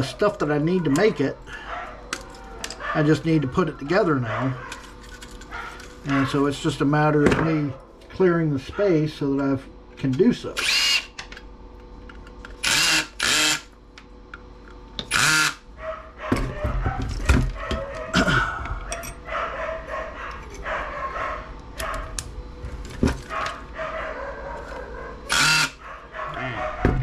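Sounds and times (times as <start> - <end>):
dog barking: 0.8 - 3.2, 4.1 - 4.8, 15.8 - 18.2, 19.2 - 22.1, 23.3 - 27.0.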